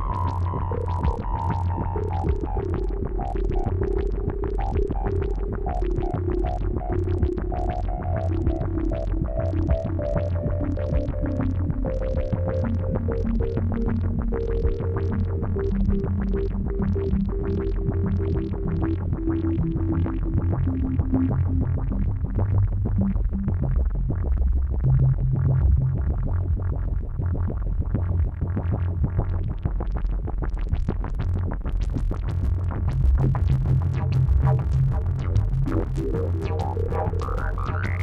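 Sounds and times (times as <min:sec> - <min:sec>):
deep synth bass line: 0:06.8 - 0:38.0
synthesizer arpeggio: 0:35.8 - 0:38.0.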